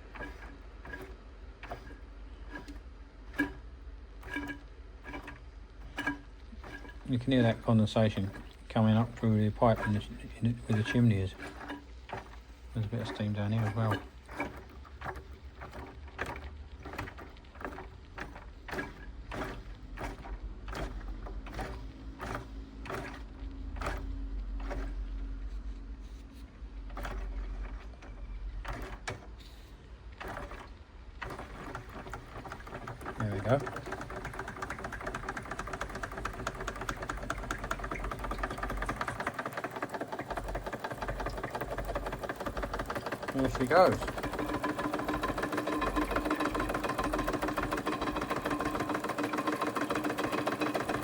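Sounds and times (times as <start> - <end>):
steam engine gurgling and spitting: 4.2 - 20.2, 31.2 - 51.0.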